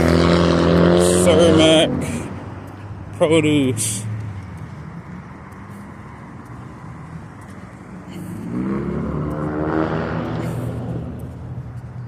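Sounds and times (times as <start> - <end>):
car engine accelerating: 0.0 - 2.4, 5.2 - 12.0
street traffic rumble: 0.0 - 12.0.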